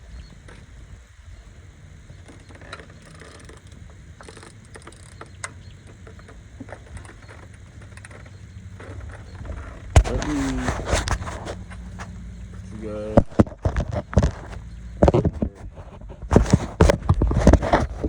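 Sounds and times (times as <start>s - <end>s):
ratchet metal clicks: 2.2s - 9.4s.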